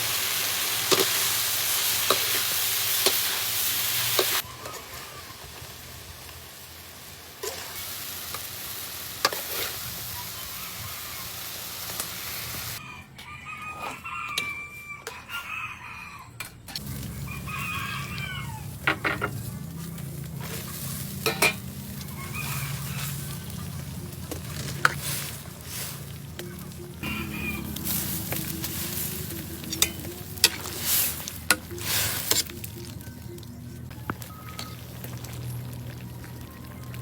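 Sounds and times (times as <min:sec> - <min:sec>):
food sizzling in a frying pan: 0:00.0 - 0:12.8, 0:16.8 - 0:33.3
scraping stirs in a pan: 0:07.4 - 0:10.1, 0:18.9 - 0:26.7, 0:27.5 - 0:32.6
chickens clucking: 0:09.8 - 0:37.0.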